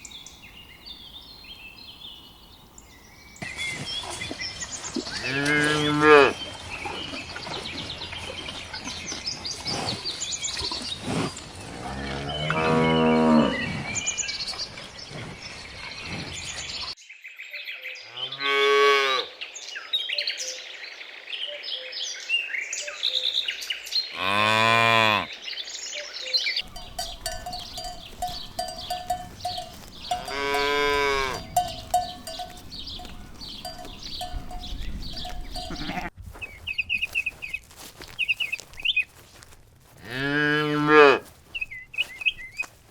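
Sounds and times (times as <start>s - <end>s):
cattle mooing: 26.6s - 36.1s.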